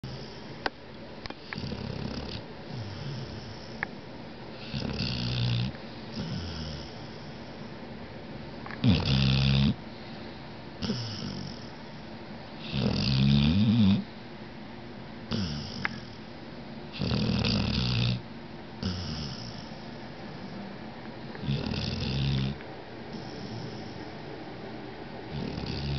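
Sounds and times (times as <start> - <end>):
pet snoring: 0.0 - 0.6, 1.4 - 3.9, 4.6 - 7.7, 8.8 - 9.8, 10.8 - 14.1, 15.3 - 16.3, 16.9 - 18.2, 18.8 - 20.6, 21.4 - 24.2, 25.3 - 25.9.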